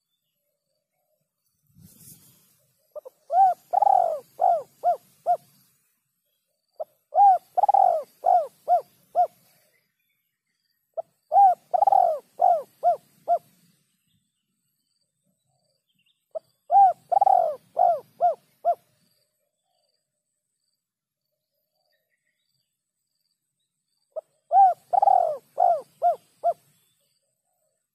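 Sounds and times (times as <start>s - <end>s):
dove cooing: 3.0s - 5.5s, 6.8s - 9.5s, 11.0s - 13.5s, 16.7s - 18.9s, 24.2s - 26.7s.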